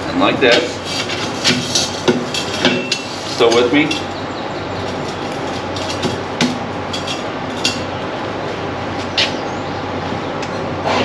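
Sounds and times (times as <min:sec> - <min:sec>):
steady background noise: 0:00.0 - 0:11.0
metal pipes clinking: 0:00.4 - 0:08.0.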